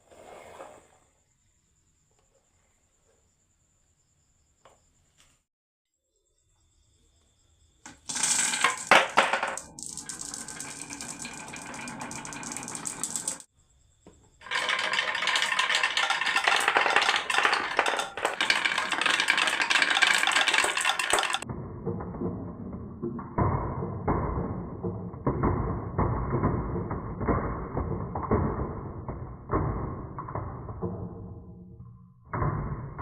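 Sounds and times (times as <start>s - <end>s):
marbles clattering down wooden run: 7.9s - 13.5s, 14.4s - 31.7s.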